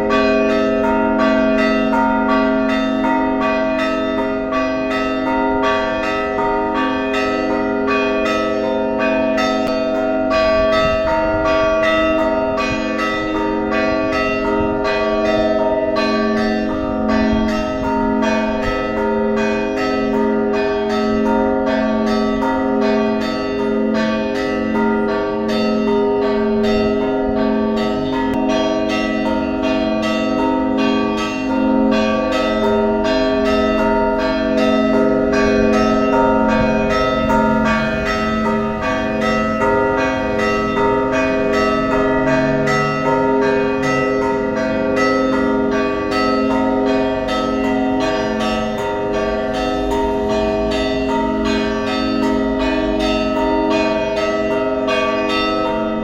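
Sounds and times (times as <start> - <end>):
large bells ringing: 0.0 - 56.0.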